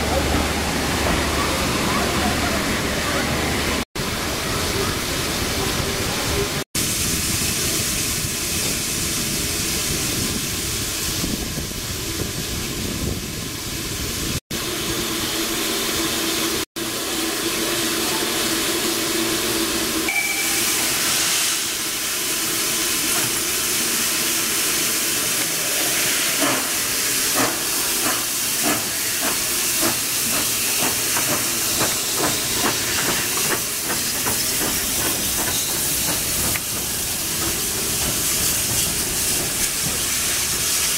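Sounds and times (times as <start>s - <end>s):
steam locomotive hissing: 0.0s - 40.9s
locomotive chuffing beats: 25.6s - 40.9s.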